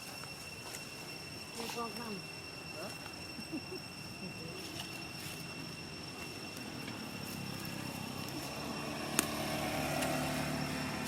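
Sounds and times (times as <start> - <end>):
high-pitched whine: 0.0 - 11.0
low engine hum: 3.0 - 11.0.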